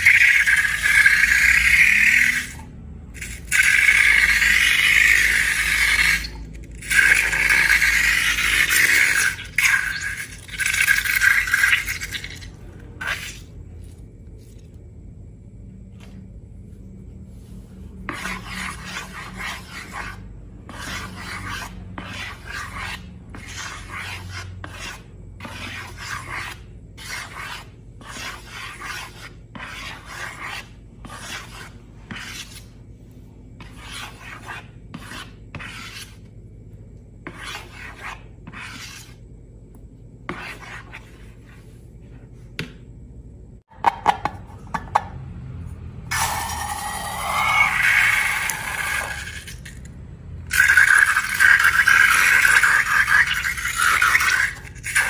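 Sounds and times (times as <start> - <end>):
tool scraping slime in container: 3.2 - 13.5, 46.1 - 49.9, 50.5 - 55.0.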